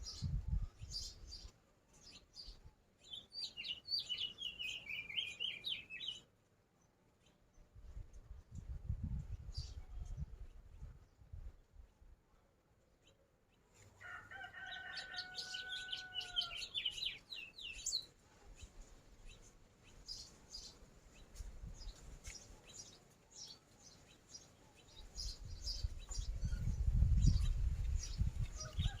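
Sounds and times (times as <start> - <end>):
small birds chirping: 0.0 - 12.2, 14.6 - 29.0
rooster crowing: 14.0 - 16.8, 28.6 - 29.0.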